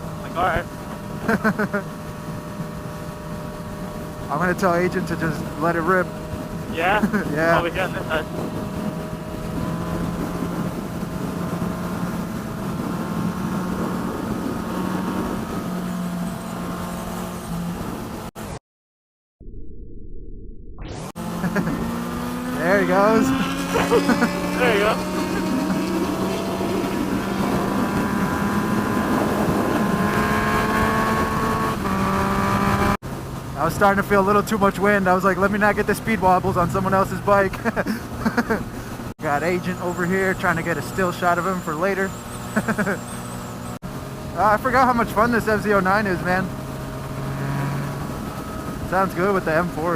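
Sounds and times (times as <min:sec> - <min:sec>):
motorcycle engine running: 0:00.0 - 0:18.3, 0:21.2 - 0:49.9
wind rush: 0:01.9 - 0:18.3, 0:21.8 - 0:33.0.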